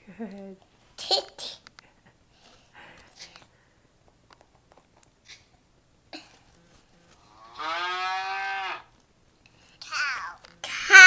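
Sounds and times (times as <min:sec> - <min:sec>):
cow mooing: 0:07.3 - 0:08.9.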